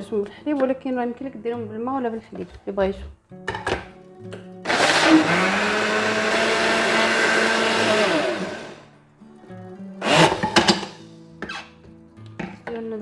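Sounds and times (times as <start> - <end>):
electric blender motor: 4.7 - 8.8, 10.0 - 11.0.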